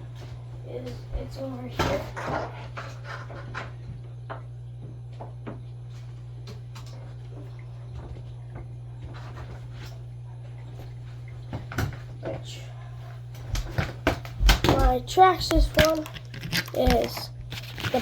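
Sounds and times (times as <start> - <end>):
steady low hum: 0.0 - 18.0
objects being handled: 13.6 - 18.0.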